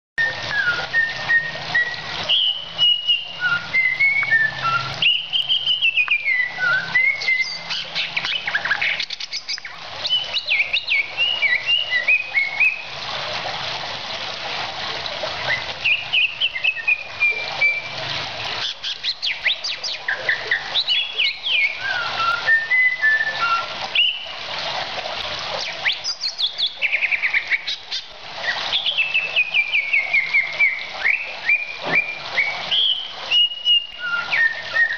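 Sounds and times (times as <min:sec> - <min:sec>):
bird singing whistled phrases: 0:00.2 - 0:12.9, 0:15.5 - 0:18.0, 0:18.8 - 0:24.3, 0:25.7 - 0:34.9.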